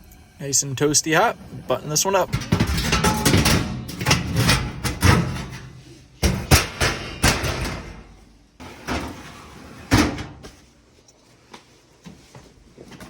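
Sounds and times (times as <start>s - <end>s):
metal clunks and knocks: 1.4s - 8.2s.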